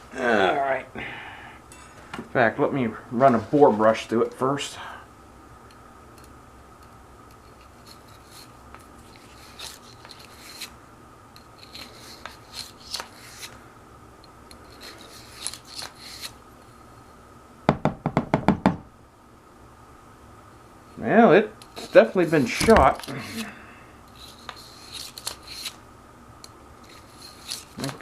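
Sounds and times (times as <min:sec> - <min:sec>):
loud knocks: 0:17.7 - 0:18.9.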